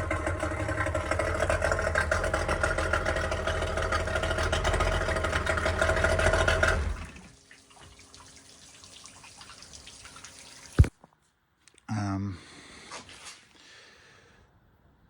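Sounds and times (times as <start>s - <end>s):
outboard motor idling: 0.0s - 7.4s.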